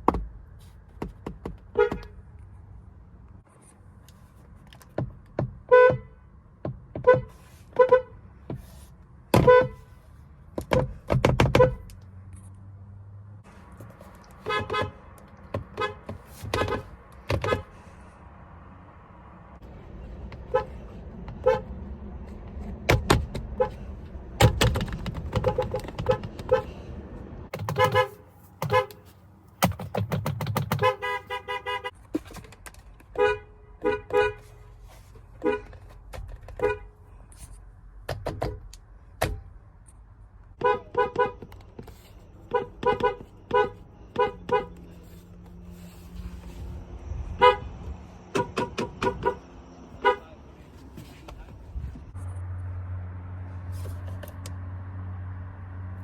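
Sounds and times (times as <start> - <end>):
car horn tooting: 5.7 - 6.2, 7.0 - 8.2, 9.4 - 9.9, 14.4 - 15.1, 15.7 - 17.7, 21.4 - 21.7, 25.3 - 26.8, 27.6 - 29.8, 30.6 - 32.0, 33.2 - 34.7, 35.4 - 35.8, 36.6 - 37.0, 40.6 - 41.5, 42.5 - 44.8, 47.4 - 50.4.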